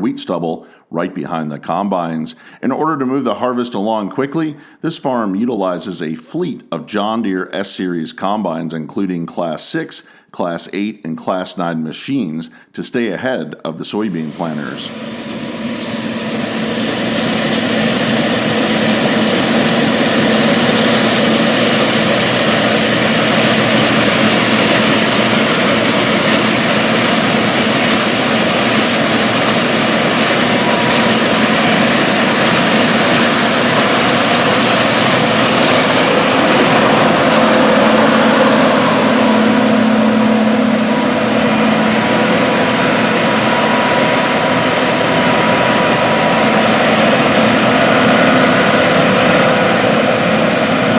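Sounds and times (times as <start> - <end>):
combine engine hum: 14.1 - 50.9
rush of machinery noise: 14.1 - 50.9.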